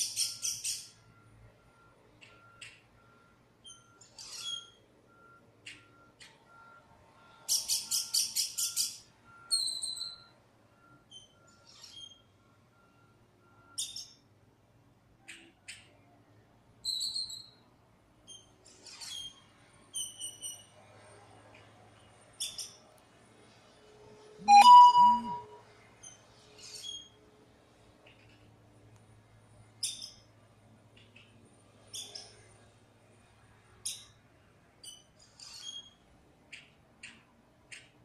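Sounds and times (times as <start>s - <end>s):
bird whistles chirps and squawks: 3.6s - 4.8s, 7.5s - 10.3s, 13.8s - 14.2s, 16.8s - 17.6s, 24.4s - 25.5s.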